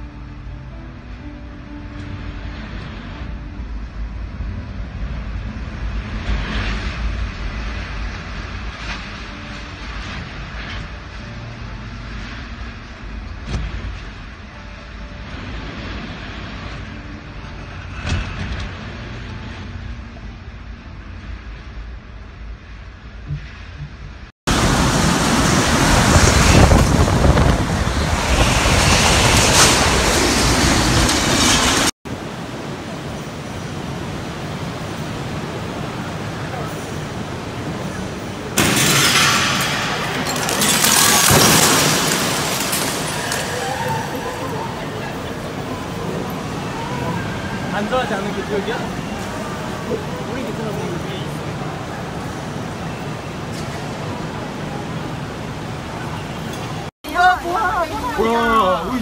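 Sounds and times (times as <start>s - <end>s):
strong wind gusts buffeting microphone: 24.5s - 38.6s.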